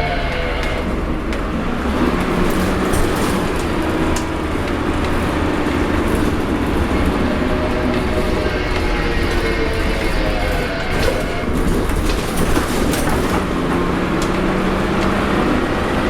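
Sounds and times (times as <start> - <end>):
bus engine rumbling: 0.0 - 16.0
retarder whining: 0.0 - 16.0.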